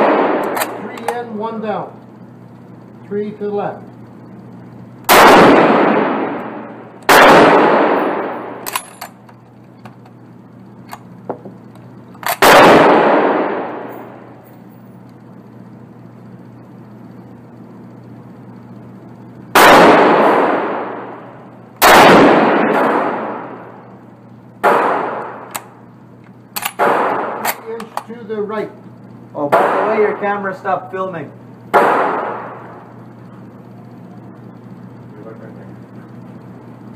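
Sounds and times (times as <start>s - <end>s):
rifle shots echoing indoors: 0.0s - 0.8s, 5.1s - 9.1s, 12.2s - 14.3s, 19.5s - 23.8s, 24.6s - 25.8s, 26.6s - 27.9s, 29.5s - 30.2s, 31.7s - 32.9s
rifle bolt clicks: 26.6s - 26.8s.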